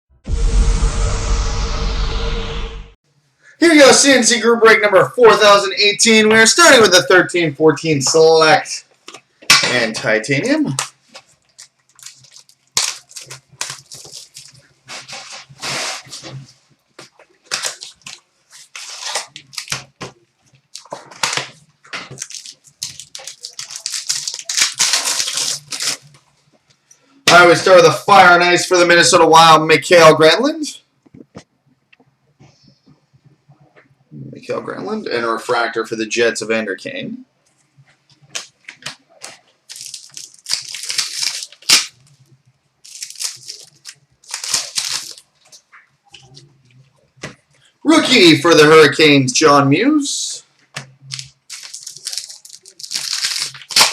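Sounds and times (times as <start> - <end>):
plastic and foil wrappers crinkling: 10.8 - 26.3, 38.2 - 48.2, 50.6 - 53.9.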